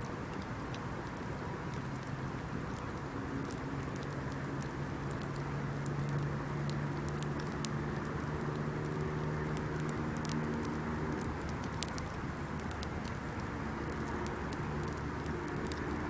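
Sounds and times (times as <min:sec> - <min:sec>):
bonfire crackling and popping: 0:00.0 - 0:16.0
steady low hum: 0:00.0 - 0:16.0.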